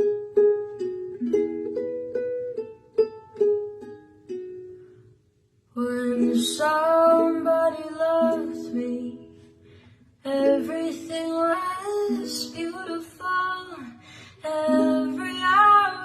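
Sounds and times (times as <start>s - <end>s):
ukulele picked melody: 0.0s - 16.0s
person singing: 5.8s - 9.4s, 10.2s - 16.0s.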